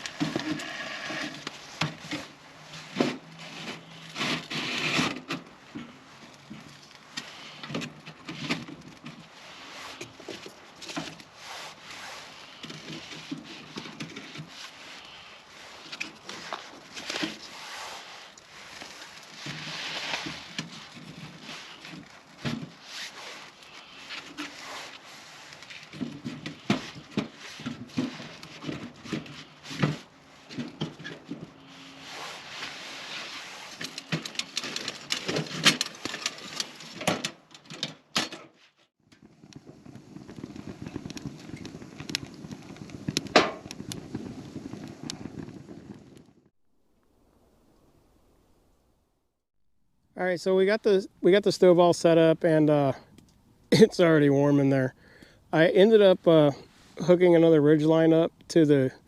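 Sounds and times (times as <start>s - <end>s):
camping gear knocking and rustling: 1.2s - 11.8s, 12.4s - 17.6s, 18.4s - 46.5s.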